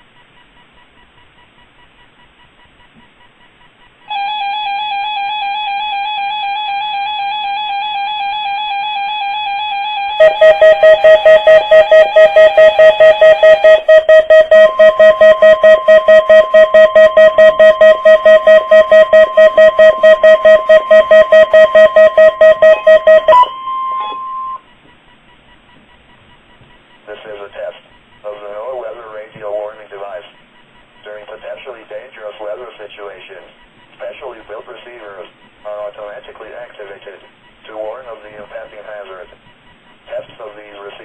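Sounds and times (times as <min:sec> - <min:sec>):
loud rapid beeping: 0:03.7 - 0:24.7
steady electronic alarm tone: 0:04.1 - 0:24.8.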